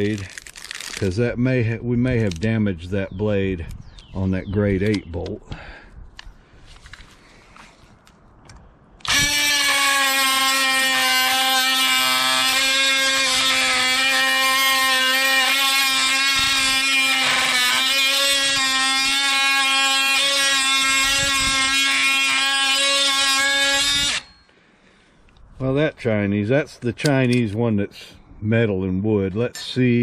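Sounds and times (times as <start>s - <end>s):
oscillating multi-tool cutting metal: 9.0s - 24.4s.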